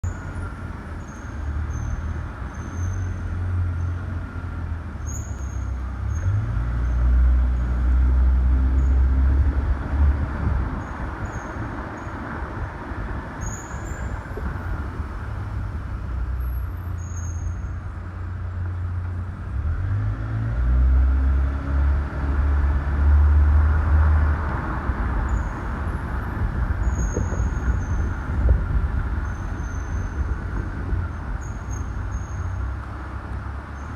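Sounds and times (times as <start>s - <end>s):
brakes squealing: 0.0s - 7.8s, 13.4s - 20.5s, 24.1s - 33.9s
car engine and road rumble: 0.0s - 33.9s.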